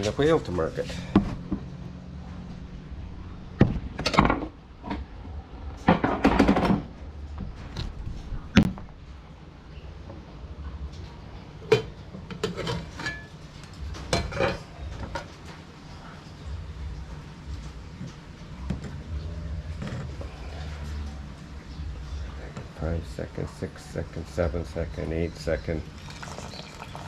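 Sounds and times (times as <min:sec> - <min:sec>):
pots and utensils clattering: 0:11.6 - 0:15.6.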